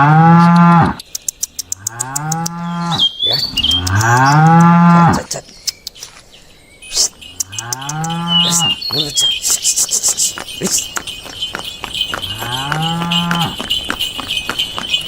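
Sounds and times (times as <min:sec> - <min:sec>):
cattle mooing: 0:00.0 - 0:01.0, 0:01.7 - 0:05.2, 0:07.3 - 0:08.8, 0:12.2 - 0:13.6
high chirps and ticks: 0:00.1 - 0:15.0.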